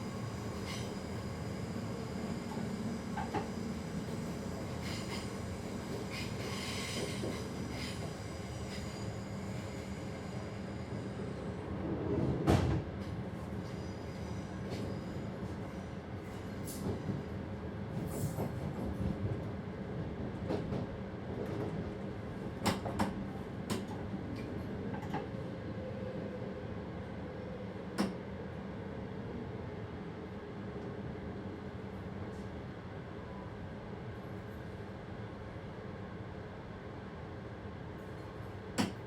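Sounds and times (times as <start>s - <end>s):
train rumbling: 0.0s - 32.7s.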